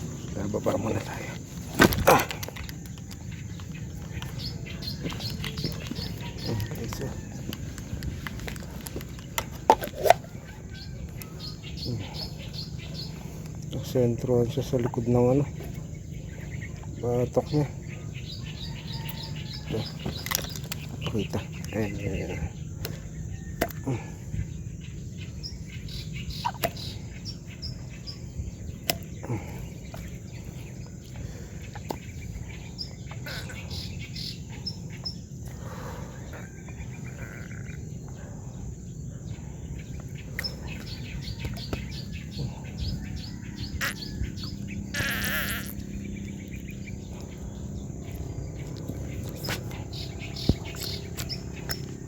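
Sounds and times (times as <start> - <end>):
birds chirping: 0.0 - 52.0
low background rumble: 0.0 - 52.0.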